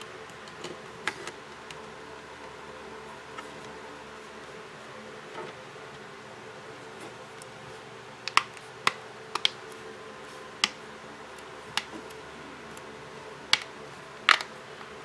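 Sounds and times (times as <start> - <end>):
small parts clicking and tapping: 14.3 - 14.5.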